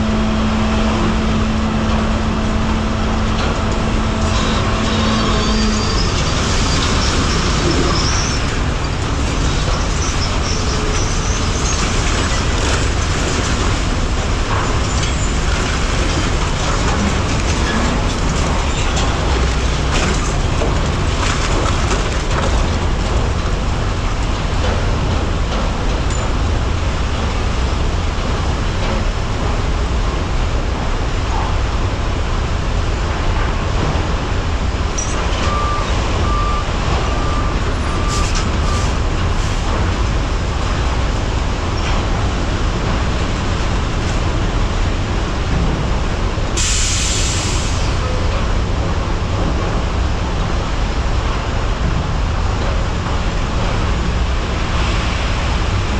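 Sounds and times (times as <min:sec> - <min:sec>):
heavy truck engine and road noise: 0:00.0 - 0:55.9
backup alarm beeping: 0:35.4 - 0:38.4.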